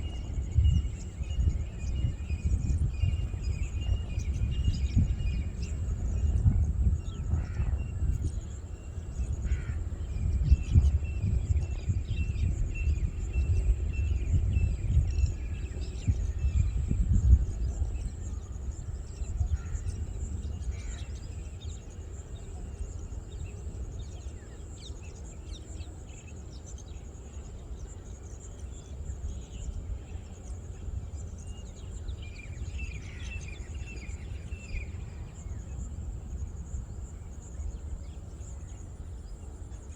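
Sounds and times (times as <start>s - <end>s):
birds chirping: 0.0s - 39.9s.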